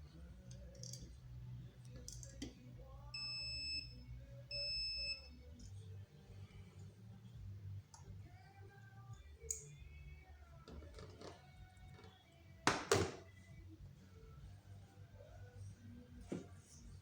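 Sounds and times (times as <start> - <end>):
faint low background noise: 0.0 - 17.0
electronic beep: 3.2 - 5.3.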